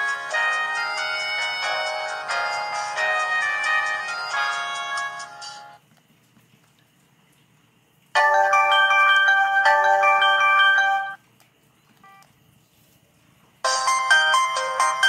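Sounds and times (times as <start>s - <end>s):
bright ringtone: 0.0s - 5.8s, 8.2s - 11.2s, 13.7s - 15.0s
chiming ringtone melody: 0.0s - 5.8s, 8.2s - 11.2s, 13.7s - 15.0s.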